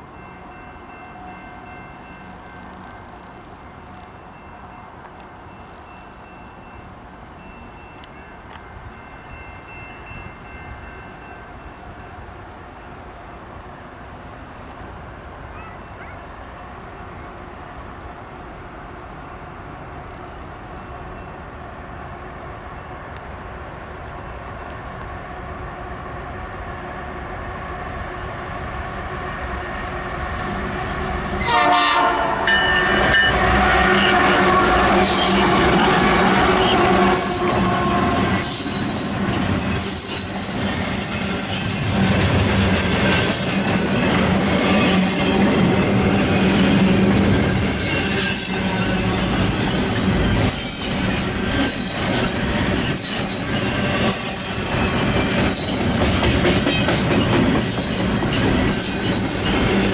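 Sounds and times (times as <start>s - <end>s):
freight train rumbling: 0.0s - 59.9s
train air horn: 31.4s - 39.1s, 47.6s - 49.6s.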